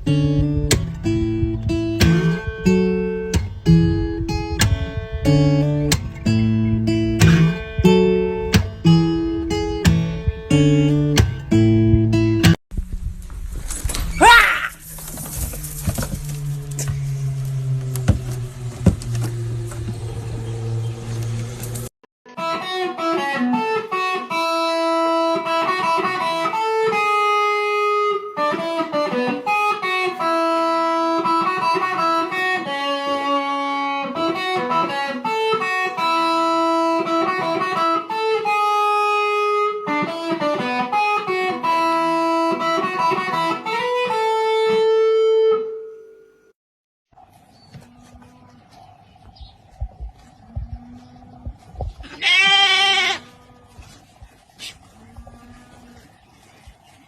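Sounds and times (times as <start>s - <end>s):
plucked-string melody: 0.0s - 12.6s, 22.3s - 46.1s
low hum: 0.0s - 21.9s, 47.2s - 52.1s.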